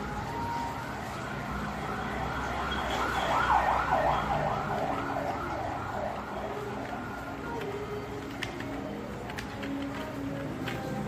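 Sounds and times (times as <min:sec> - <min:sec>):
emergency siren yelping: 0:00.4 - 0:07.5.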